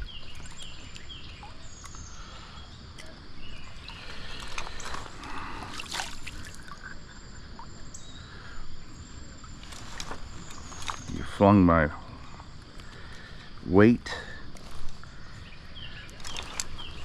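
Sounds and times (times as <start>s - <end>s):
creek water running: 0.0s - 8.6s, 9.4s - 17.0s
water splashing: 3.0s - 7.0s.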